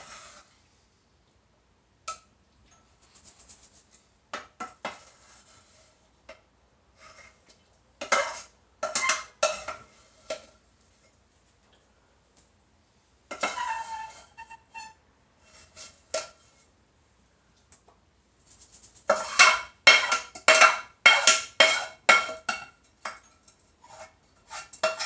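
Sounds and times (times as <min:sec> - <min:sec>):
cookware and utensils clattering: 0:08.0 - 0:11.1, 0:13.3 - 0:16.5, 0:19.1 - 0:25.0.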